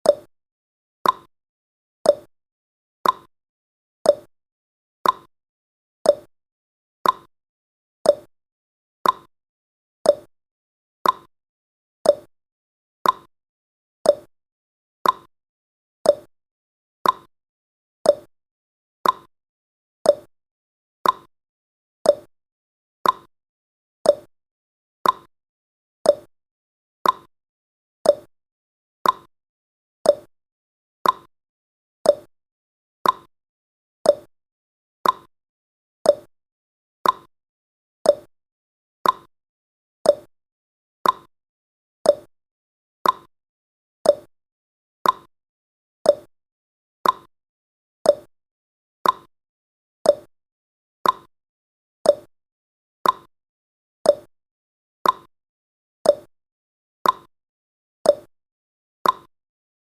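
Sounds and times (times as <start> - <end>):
countdown timer ticking: 34.1 - 34.3, 38.1 - 38.3, 40.1 - 40.3, 42.1 - 42.3, 44.1 - 44.3, 46.1 - 46.3, 48.1 - 48.3.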